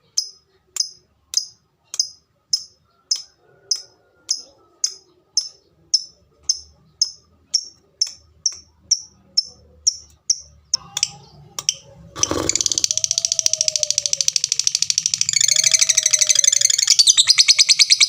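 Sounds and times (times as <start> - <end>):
lovebird high tik calls: 9.9 - 18.0.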